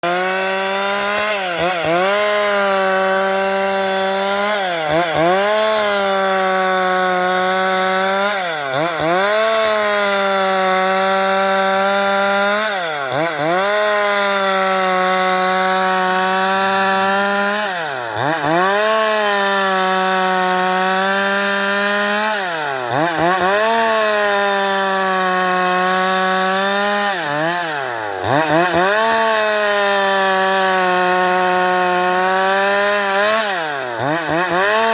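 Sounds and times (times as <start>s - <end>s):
chainsaw cutting wood: 0.0s - 34.9s.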